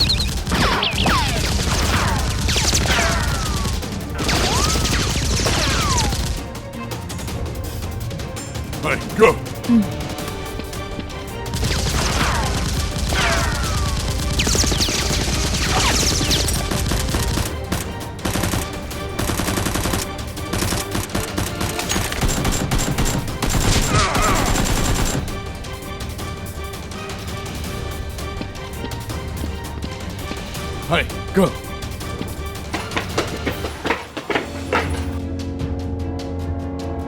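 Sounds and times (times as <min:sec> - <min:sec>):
rapid automatic gunfire: 0:00.0 - 0:06.5, 0:11.5 - 0:25.3
background music: 0:00.0 - 0:37.0.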